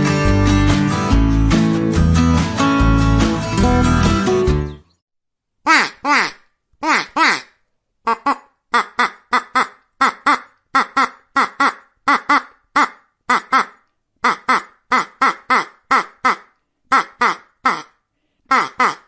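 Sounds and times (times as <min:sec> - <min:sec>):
duck quacking: 0:05.7 - 0:19.0.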